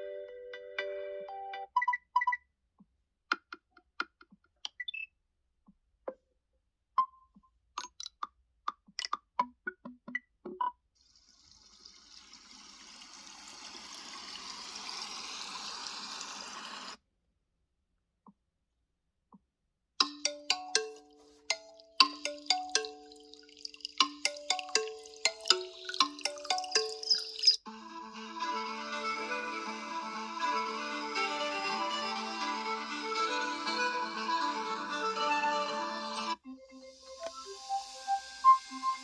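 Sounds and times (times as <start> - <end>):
ringtone notes and clicks: 0.0 - 2.4, 20.0 - 39.0
rushing hiss: 12.4 - 17.0.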